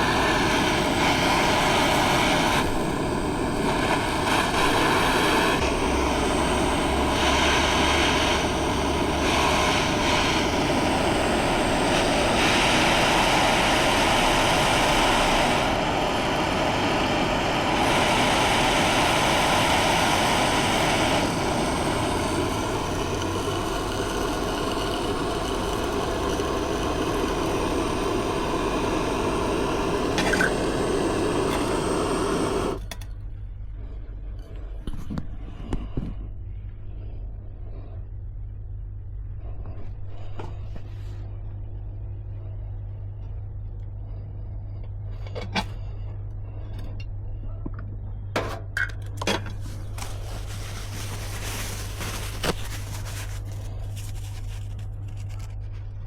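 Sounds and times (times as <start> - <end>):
torch flame hissing: 0.0 - 33.0, 49.5 - 56.0.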